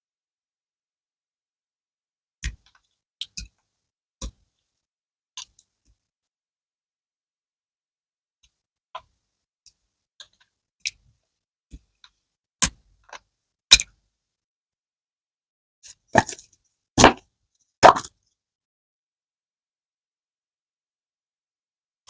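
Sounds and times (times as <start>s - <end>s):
sticky slime clicks and pops: 13.7s - 13.9s.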